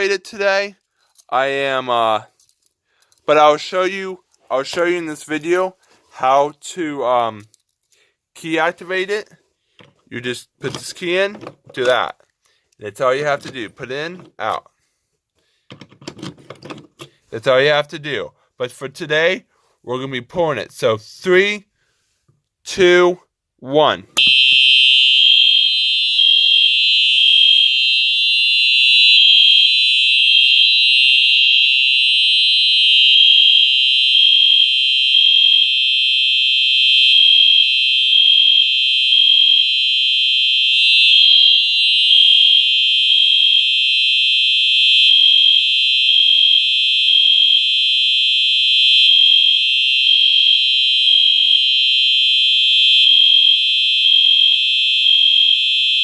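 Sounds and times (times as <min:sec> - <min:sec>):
fire alarm horn tone: 0:24.2 - 0:56.0.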